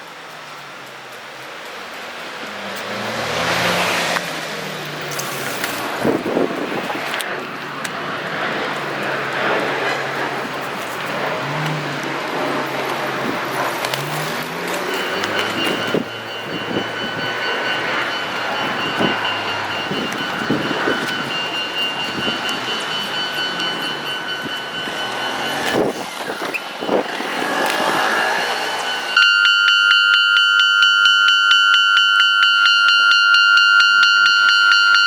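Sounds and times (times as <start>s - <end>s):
road traffic passing: 0.0s - 35.0s
level crossing warning bell ringing: 12.6s - 35.0s.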